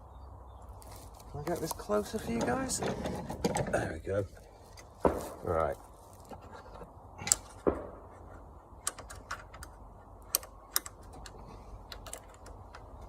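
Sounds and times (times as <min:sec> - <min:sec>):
mower parts clicking and tapping: 0:01.6 - 0:03.8, 0:08.8 - 0:13.0.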